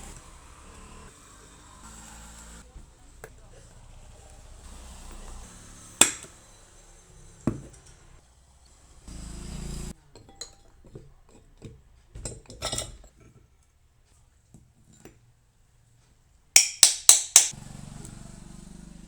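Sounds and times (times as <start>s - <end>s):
tools and metal parts clinking: 5.0s - 8.2s, 10.1s - 13.7s.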